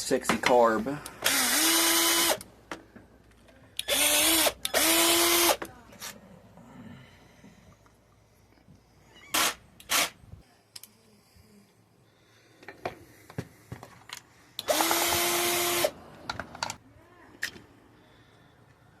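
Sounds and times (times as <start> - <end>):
power drill whining: 1.2 - 2.4, 3.8 - 5.6, 14.6 - 15.9.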